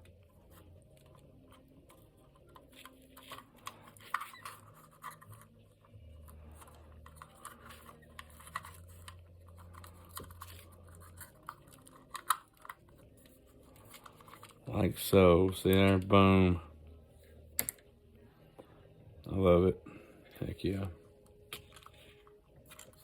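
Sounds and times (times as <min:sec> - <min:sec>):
scratching and clicks of wires: 0:00.0 - 0:16.3
faint low hum: 0:00.0 - 0:23.0.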